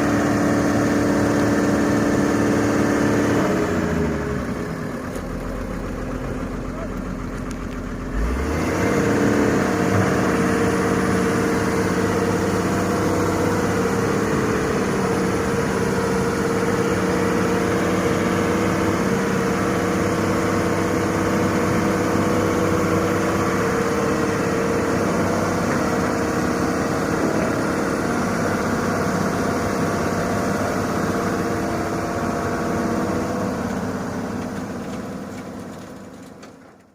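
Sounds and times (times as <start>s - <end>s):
heavy diesel engine running: 0.0s - 36.9s.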